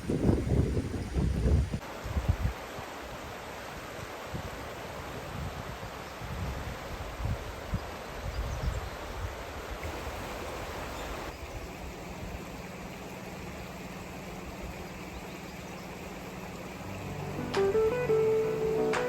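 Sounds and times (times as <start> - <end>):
wind buffeting microphone: 0.0 - 2.6, 5.3 - 9.4
river flowing: 1.8 - 8.3, 9.0 - 19.0.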